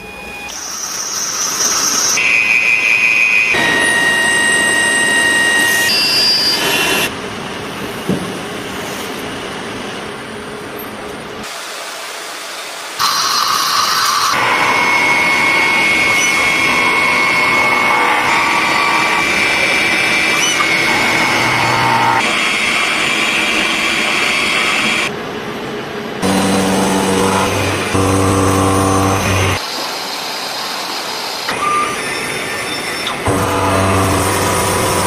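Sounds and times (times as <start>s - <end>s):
machine tool cutting metal: 13.0s - 25.1s, 26.2s - 29.6s, 33.0s - 35.0s
thin high whine: 13.0s - 25.1s.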